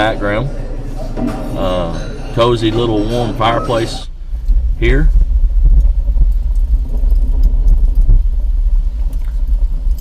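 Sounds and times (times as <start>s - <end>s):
fireplace recording rumble: 0.0s - 10.0s
faint fire crackles: 3.4s - 10.0s.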